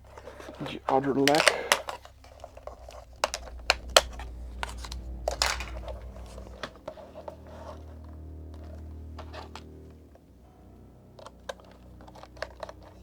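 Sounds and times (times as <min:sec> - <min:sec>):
small parts clicking and rattling: 0:00.0 - 0:10.2, 0:11.0 - 0:13.0
steady low hum: 0:00.0 - 0:13.0.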